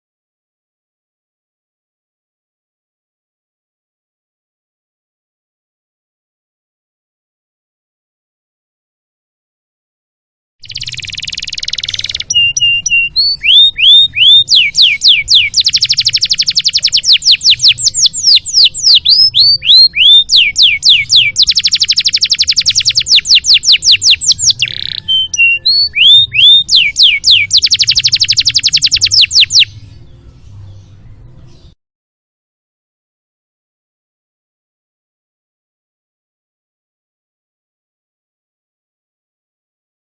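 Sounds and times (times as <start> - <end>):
canary singing: 10.6 - 31.8.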